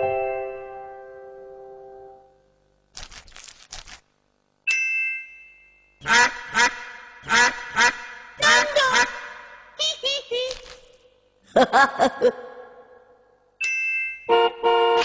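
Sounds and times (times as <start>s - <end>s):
duck quacks: 6.0s - 9.5s.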